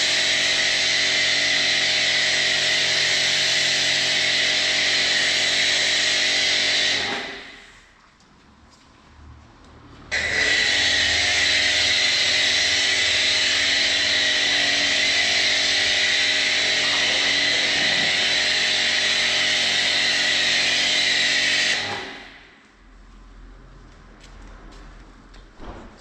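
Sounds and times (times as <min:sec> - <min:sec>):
pressure washer spraying foam: 0:00.0 - 0:07.8, 0:10.1 - 0:22.5.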